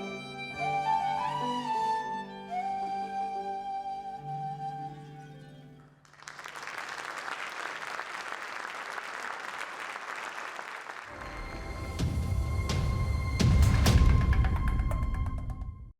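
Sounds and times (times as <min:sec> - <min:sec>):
audience applauding: 0:06.0 - 0:12.1.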